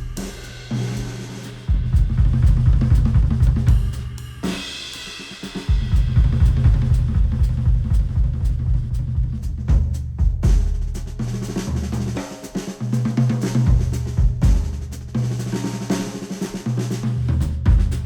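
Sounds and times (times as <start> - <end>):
instrumental music with heavy beat: 0.0 - 18.0.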